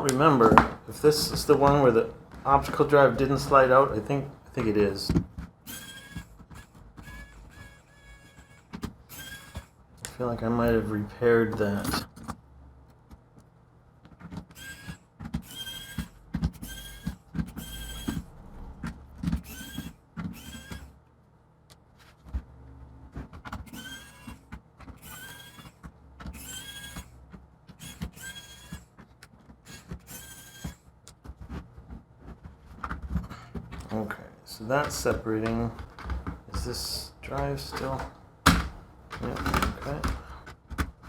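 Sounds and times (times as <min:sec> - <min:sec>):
small motor whirring: 0:02.5 - 0:10.9, 0:14.3 - 0:21.0, 0:23.6 - 0:29.0, 0:29.6 - 0:30.9.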